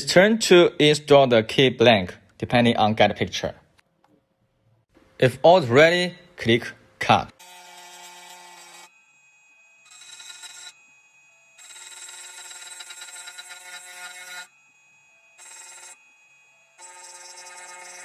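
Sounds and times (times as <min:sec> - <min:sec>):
key-cutting machine motor whine: 0:08.1 - 0:18.0.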